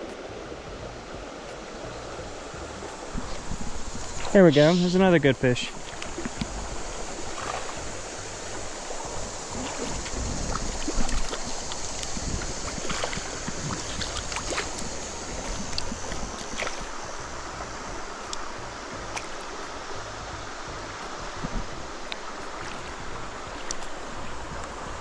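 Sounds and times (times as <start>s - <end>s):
stream water rushing: 0.0s - 25.0s
wind buffeting microphone: 0.0s - 25.0s
faint clicks: 18.2s - 18.5s.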